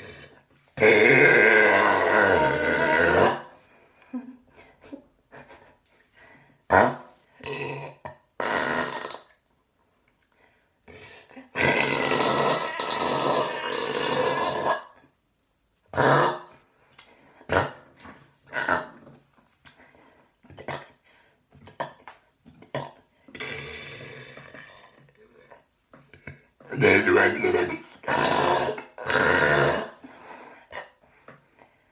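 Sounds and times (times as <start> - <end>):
woman belching loudly: 0.8 - 3.5, 11.6 - 14.8, 26.7 - 30.0.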